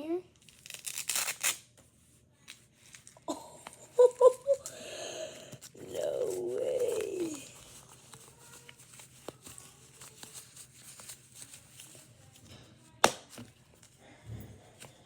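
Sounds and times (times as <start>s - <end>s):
faint rustles: 5.5s - 13.0s.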